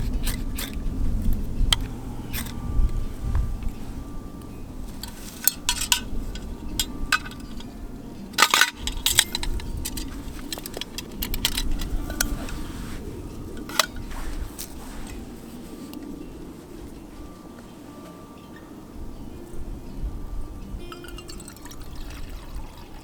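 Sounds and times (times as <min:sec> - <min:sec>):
metal cookware clinking: 0:03.8 - 0:12.6, 0:13.5 - 0:14.1, 0:20.9 - 0:21.8.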